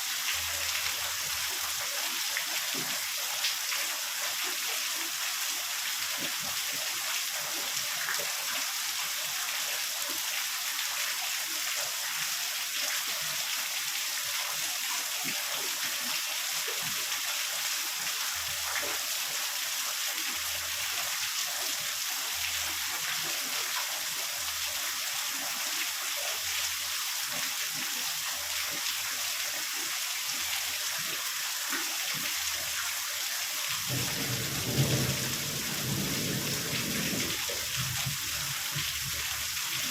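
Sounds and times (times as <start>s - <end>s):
heavy rain: 0.0s - 4.0s, 20.3s - 24.6s, 32.4s - 39.9s
thunder rumble: 33.9s - 38.2s.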